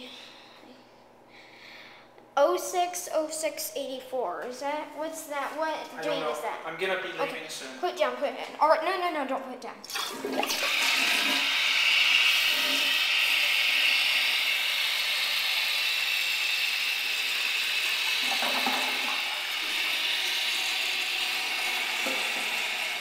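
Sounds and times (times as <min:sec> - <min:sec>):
toilet fill valve hissing: 0:09.9 - 0:23.0.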